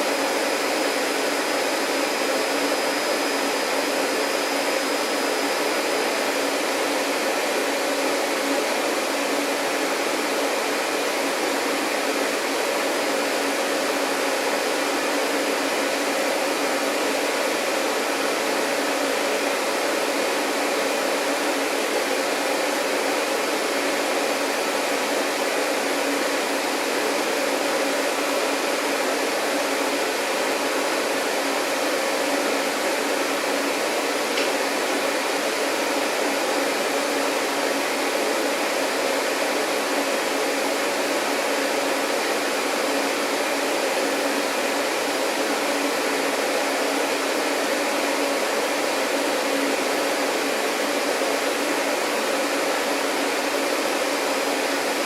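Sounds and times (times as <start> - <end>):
vacuum cleaner running: 0.0 - 55.0.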